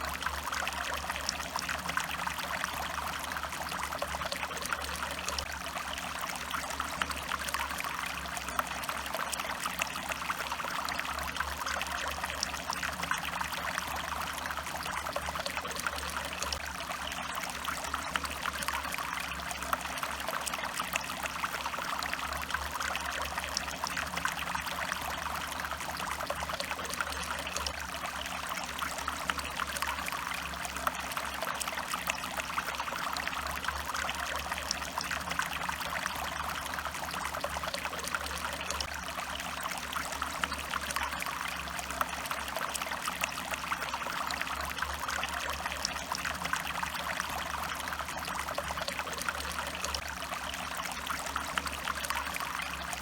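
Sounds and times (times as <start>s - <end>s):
stream water trickling over rocks: 0.0s - 53.0s.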